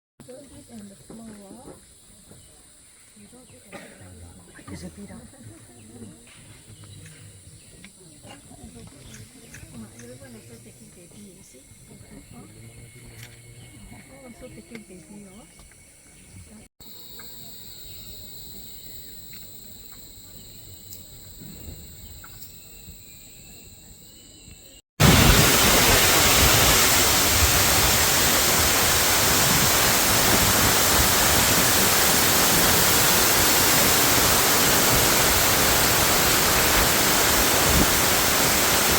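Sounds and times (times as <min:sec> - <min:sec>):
forest insects droning: 0:00.2 - 0:38.9
waterfall rushing: 0:25.0 - 0:38.9.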